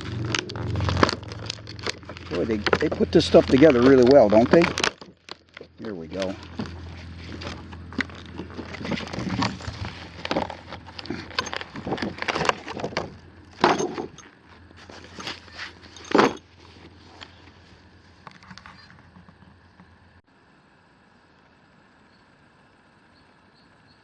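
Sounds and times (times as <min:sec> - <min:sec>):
plastic packaging rustling: 0:00.0 - 0:17.6.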